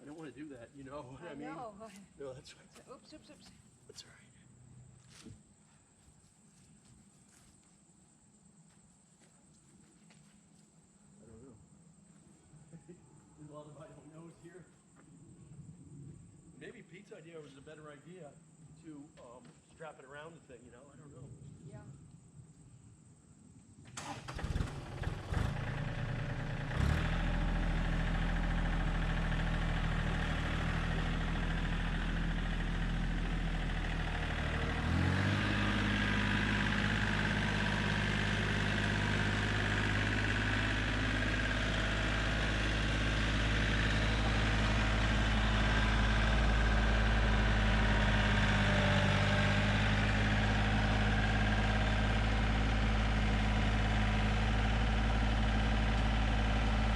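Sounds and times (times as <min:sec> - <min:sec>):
tractor engine cranking: 0:24.0 - 0:26.0
tractor engine running: 0:24.0 - 0:56.9.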